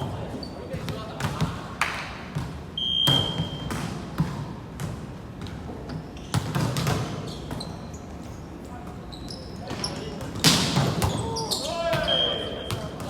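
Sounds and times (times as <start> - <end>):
whistle blast: 2.8 - 3.7, 12.0 - 12.7.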